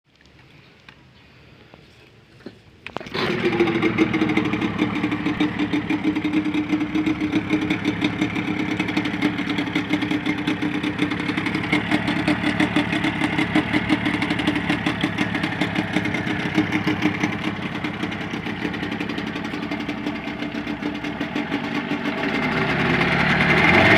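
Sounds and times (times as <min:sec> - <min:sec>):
engine idling fast: 0:03.0 - 0:23.9.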